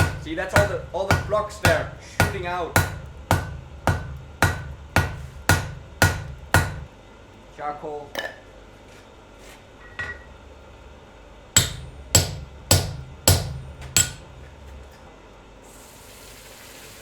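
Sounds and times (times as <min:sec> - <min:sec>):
hammer striking hot steel: 0:00.0 - 0:06.9, 0:11.6 - 0:14.4
hot steel quenching hiss: 0:15.6 - 0:17.0.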